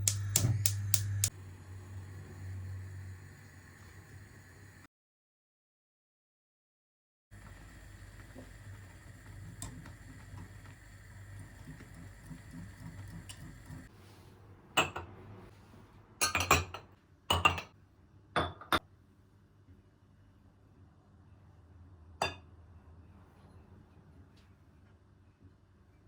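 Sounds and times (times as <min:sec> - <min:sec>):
steady hum with faint ticks: 0:00.0 - 0:01.4, 0:07.4 - 0:13.9
dishes and glassware clinking: 0:16.2 - 0:17.7, 0:18.4 - 0:18.8, 0:22.2 - 0:22.5.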